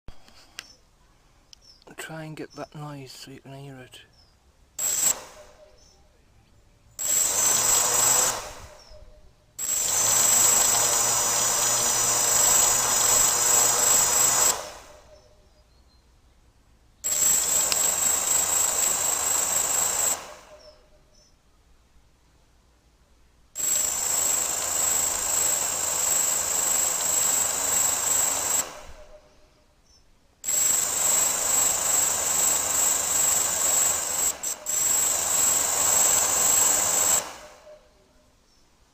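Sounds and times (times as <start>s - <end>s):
quadcopter motors whining: 4.8s - 5.7s, 7.0s - 9.0s, 9.6s - 15.2s, 17.0s - 20.8s, 23.6s - 29.3s, 30.4s - 37.8s
clicking from motors: 17.1s - 20.8s.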